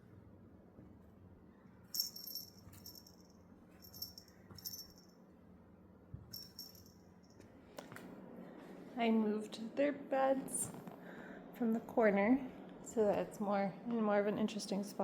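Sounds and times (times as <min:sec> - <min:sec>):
cat toy bell jingling: 0:02.0 - 0:05.1, 0:06.3 - 0:07.0.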